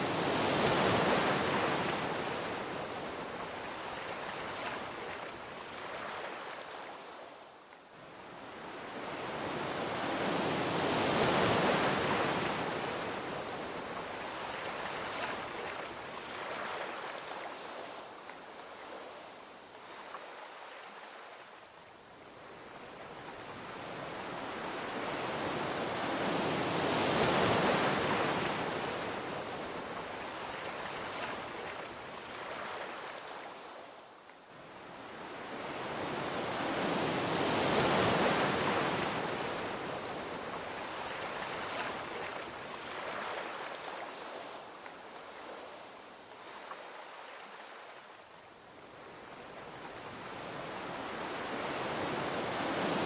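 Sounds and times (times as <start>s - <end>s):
ocean waves washing onto beach: 0.0s - 53.0s.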